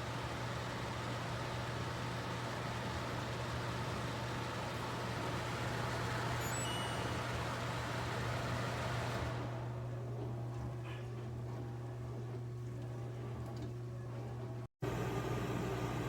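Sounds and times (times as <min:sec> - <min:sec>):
dehumidifier fan air rushing: 0:00.0 - 0:16.0
faint high tone: 0:06.4 - 0:07.4.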